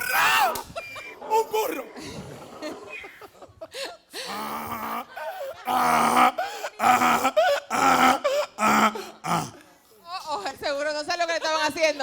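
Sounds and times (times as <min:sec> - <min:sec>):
person imitating donkey bray: 0:05.7 - 0:09.6.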